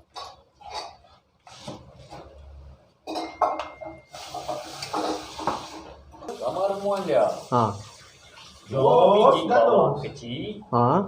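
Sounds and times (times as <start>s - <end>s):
pots and utensils clinking: 0.0s - 2.3s, 3.0s - 6.4s
steady hiss: 4.1s - 8.8s.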